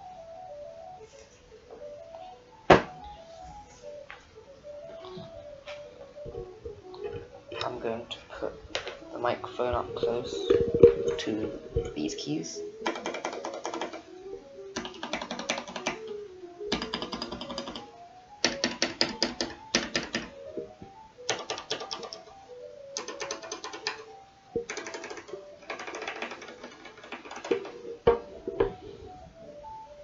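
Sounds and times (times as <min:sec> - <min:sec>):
keyboard keystroke clacks: 0:12.8 - 0:14.1, 0:14.7 - 0:20.4, 0:21.3 - 0:22.3, 0:23.0 - 0:28.8.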